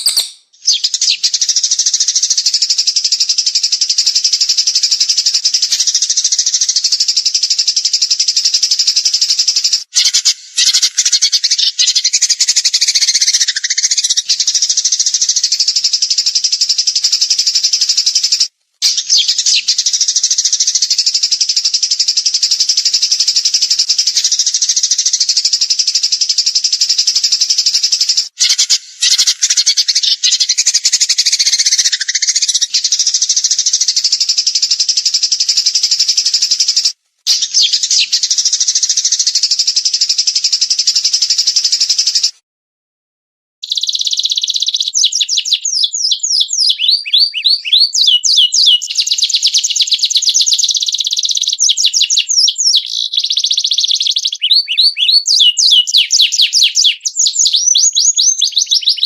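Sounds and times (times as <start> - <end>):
songbird trilling: 0.0 - 2.6, 9.6 - 15.6, 26.5 - 34.1, 43.6 - 50.0, 50.6 - 59.0.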